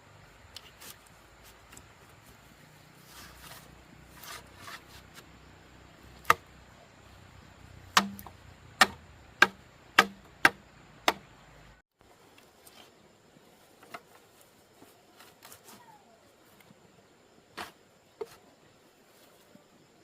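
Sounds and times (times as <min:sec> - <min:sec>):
hand tool striking knocks: 0:08.0 - 0:11.2.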